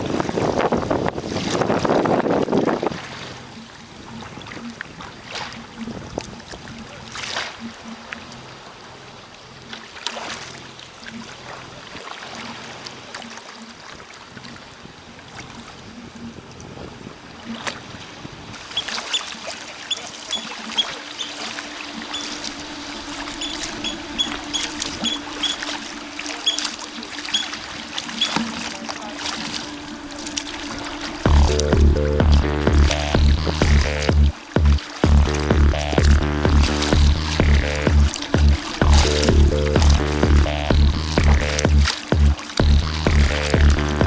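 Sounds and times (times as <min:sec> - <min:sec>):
water splashing around kayak: 0:00.0 - 0:32.3, 0:32.9 - 0:35.0, 0:35.8 - 0:44.0
soft background music: 0:20.2 - 0:44.0
high ticking beat: 0:21.1 - 0:28.4, 0:29.1 - 0:44.0.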